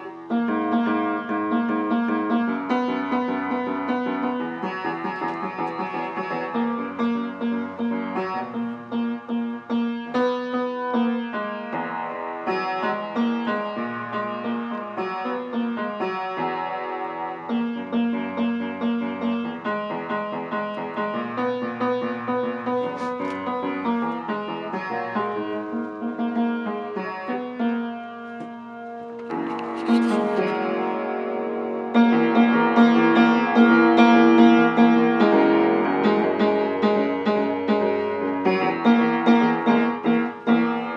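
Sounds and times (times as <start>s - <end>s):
piano playing: 0.0s - 40.9s.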